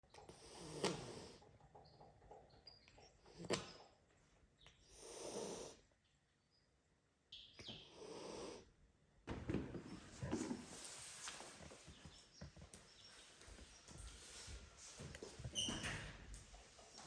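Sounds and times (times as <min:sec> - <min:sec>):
cat hissing: 0:04.9 - 0:05.8.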